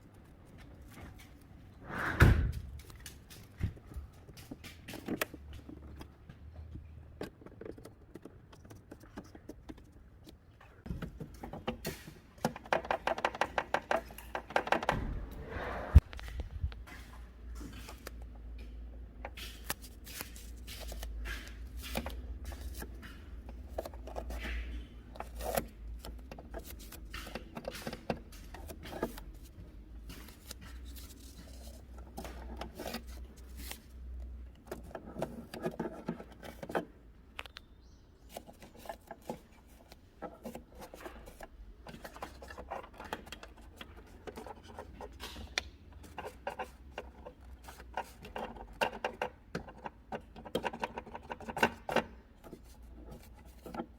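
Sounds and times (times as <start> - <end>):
clicks and taps of handling: 2.8 - 15.0.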